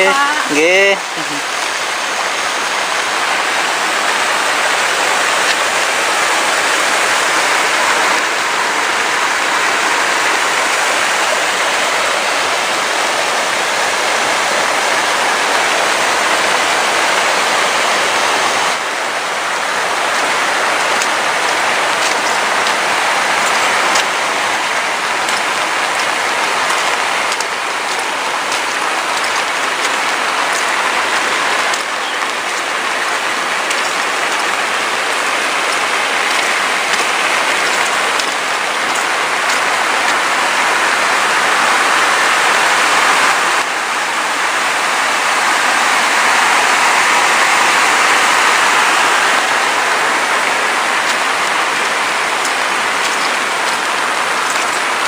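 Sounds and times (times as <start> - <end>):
raindrops ticking: 0.0 - 6.6, 18.8 - 41.2, 49.1 - 55.0
steady rain falling: 0.0 - 55.0.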